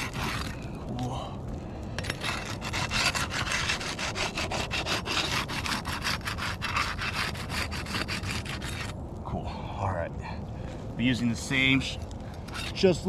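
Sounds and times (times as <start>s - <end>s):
flat bar scraping under shingles: 0.0s - 0.7s, 2.0s - 9.0s, 12.3s - 13.0s.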